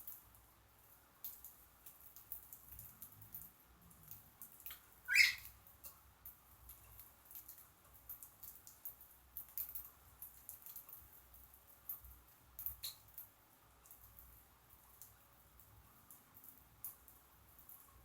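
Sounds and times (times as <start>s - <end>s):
bird chirp: 5.1s - 5.5s.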